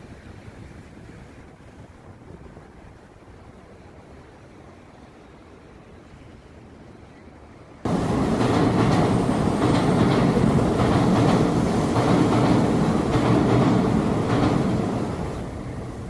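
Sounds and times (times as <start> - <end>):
subway train rumbling on rails: 7.8 - 16.0
wheels rattling: 7.9 - 16.0.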